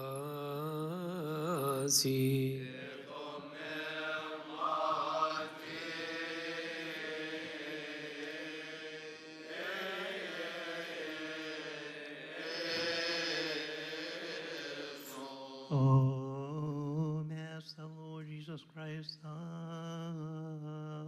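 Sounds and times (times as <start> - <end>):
man chanting: 0.0 - 3.1, 12.5 - 21.0.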